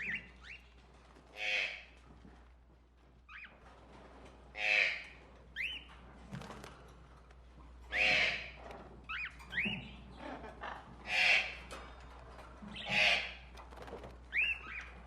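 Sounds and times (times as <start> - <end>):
harsh bird squawks: 7.9 - 8.6.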